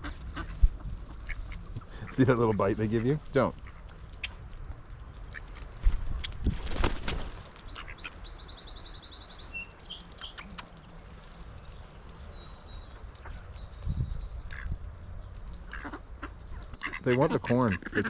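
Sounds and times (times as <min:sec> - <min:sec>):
outdoor ambience: 0:00.0 - 0:18.0
small songbirds chirping: 0:07.5 - 0:17.2
bird trilling: 0:07.7 - 0:10.8.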